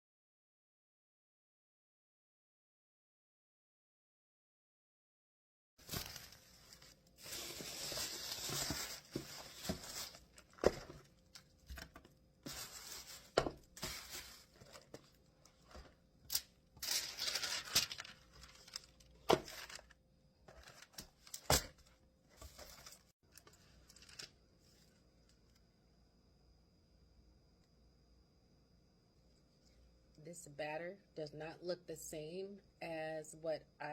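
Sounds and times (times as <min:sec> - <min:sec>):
packaging rustling and tearing: 0:05.8 - 0:24.3.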